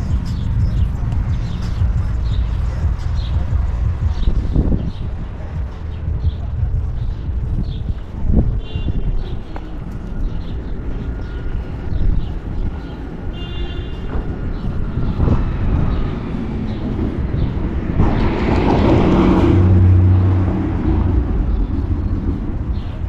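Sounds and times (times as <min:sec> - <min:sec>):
traffic rumble: 0:00.0 - 0:23.0
motor vehicle passing close: 0:14.8 - 0:23.0.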